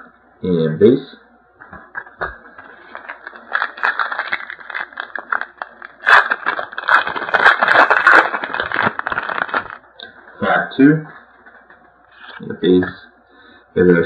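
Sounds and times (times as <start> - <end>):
wrapper crinkling and tearing: 2.5 - 9.9
cards rustling: 2.6 - 9.8.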